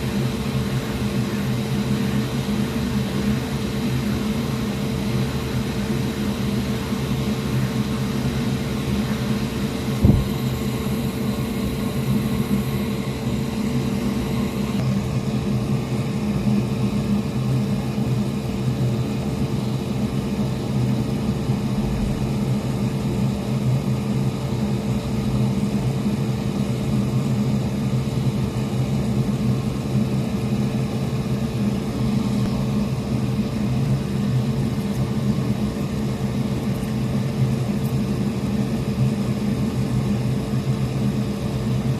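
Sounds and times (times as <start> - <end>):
small motor humming: 0.0 - 14.9.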